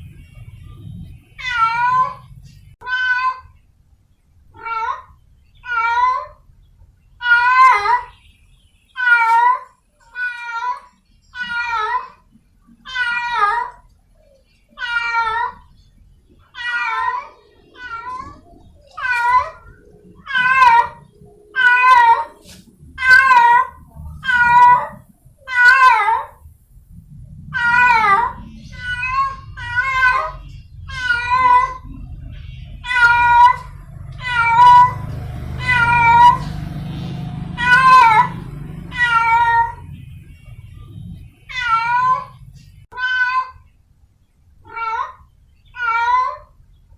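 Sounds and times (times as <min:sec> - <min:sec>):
low background rumble: 0:00.0 - 0:02.9, 0:13.7 - 0:42.9
cat meowing: 0:01.4 - 0:03.6, 0:04.6 - 0:06.4, 0:07.2 - 0:08.1, 0:09.0 - 0:12.2, 0:12.8 - 0:13.9, 0:14.7 - 0:15.8, 0:16.5 - 0:26.4, 0:27.5 - 0:32.2, 0:32.8 - 0:36.8, 0:37.4 - 0:39.9, 0:41.4 - 0:43.6, 0:44.6 - 0:46.6.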